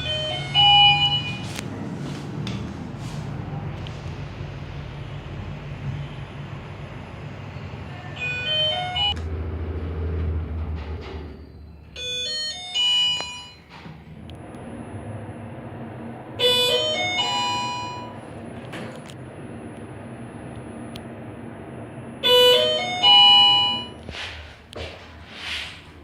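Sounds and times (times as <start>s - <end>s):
elevator electronic chimes: 0.0s - 1.5s, 8.2s - 9.2s, 11.9s - 13.7s, 15.7s - 20.3s, 21.1s - 24.1s
low hum: 14.1s - 24.1s.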